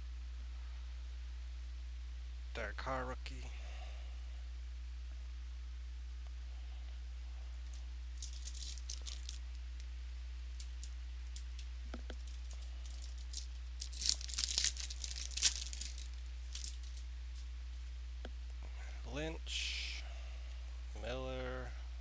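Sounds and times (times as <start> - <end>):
low electrical hum: 0.0 - 22.0
card wrappers crinkling: 7.7 - 9.9, 10.6 - 17.5
wrapper tearing: 8.2 - 9.4, 12.2 - 17.0.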